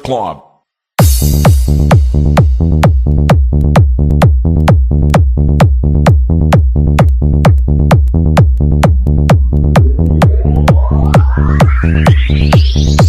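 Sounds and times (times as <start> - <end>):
deep kick drum: 1.0 - 13.0
electronic dance music: 1.0 - 13.0
rising synth sweep: 8.8 - 13.0.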